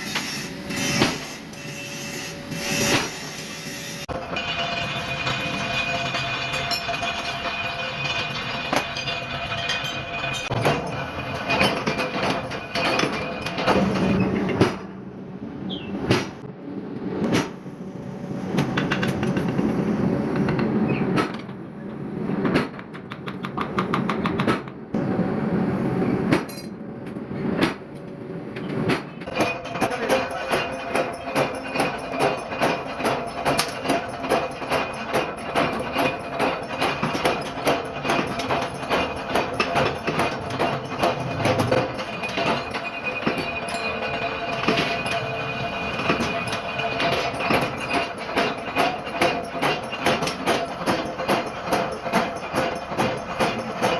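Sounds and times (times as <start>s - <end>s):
hammer striking metal: 0.0s - 14.9s, 28.9s - 53.9s.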